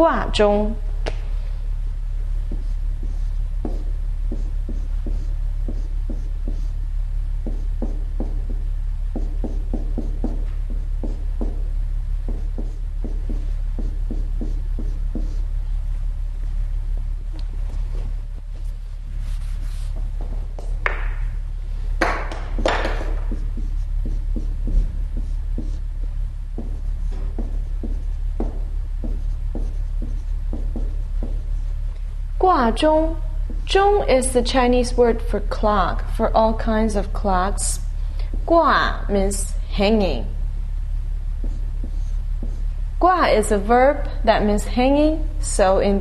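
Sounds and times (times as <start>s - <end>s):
electrical mains hum: 0.0s - 46.0s
pen tapping: 2.5s - 6.7s, 7.4s - 11.6s, 12.3s - 15.4s, 20.6s - 21.2s, 22.0s - 25.8s, 26.6s - 31.5s
pen scratching on paper: 2.5s - 6.8s, 7.4s - 11.6s, 12.3s - 15.5s, 22.6s - 25.9s, 26.5s - 31.7s, 41.4s - 42.7s.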